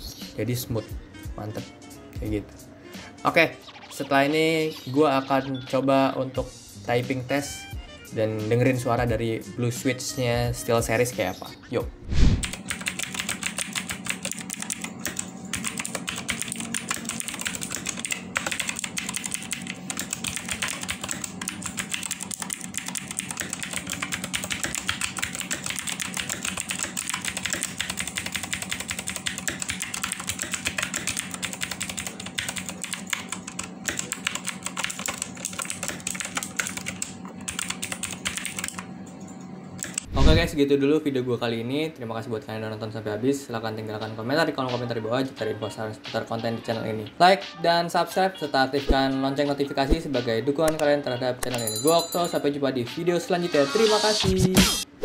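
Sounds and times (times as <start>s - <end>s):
fast mechanical keyboard typing: 12.4s - 38.9s.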